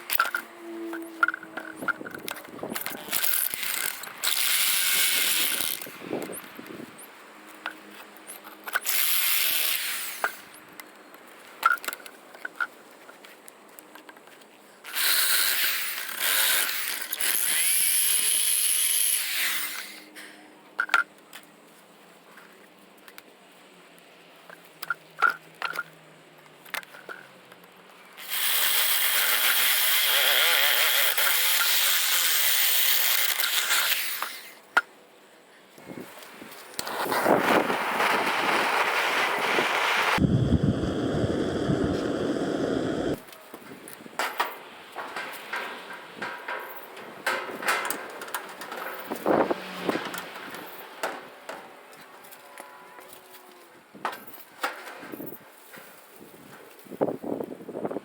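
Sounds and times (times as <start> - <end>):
power tool running: 38.3 - 43.2.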